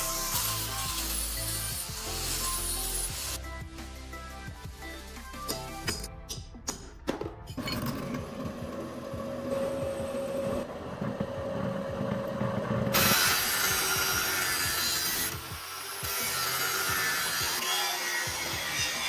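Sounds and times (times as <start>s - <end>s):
tool rasping hiss: 0.0s - 3.4s, 12.9s - 19.0s.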